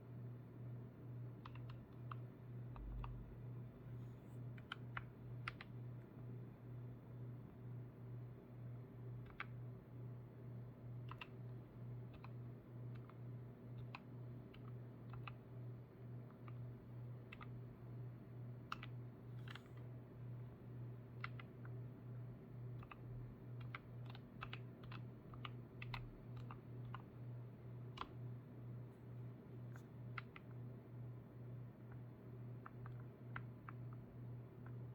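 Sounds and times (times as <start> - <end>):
low pulsing hum: 0.0 - 10.8.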